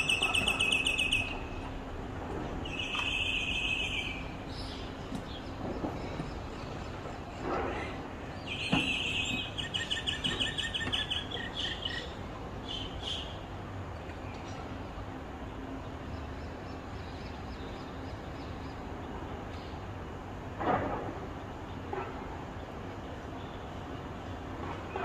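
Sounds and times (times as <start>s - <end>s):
steady background noise: 0.0s - 25.0s.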